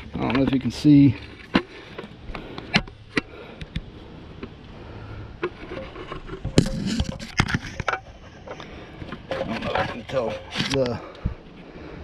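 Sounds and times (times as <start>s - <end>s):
rubber hoses scraping metal: 4.8s - 11.3s.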